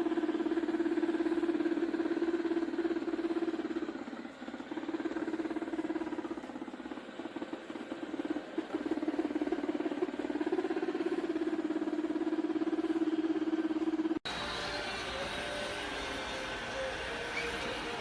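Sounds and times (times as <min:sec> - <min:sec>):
robot vacuum motor hum: 0:12.7 - 0:18.0.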